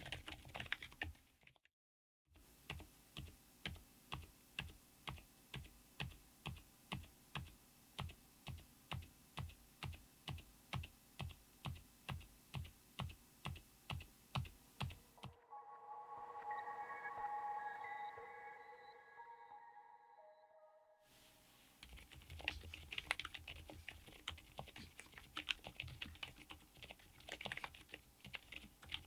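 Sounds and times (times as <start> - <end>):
mechanical keyboard keys typing: 0.0 - 1.5, 2.6 - 15.0, 21.8 - 29.0.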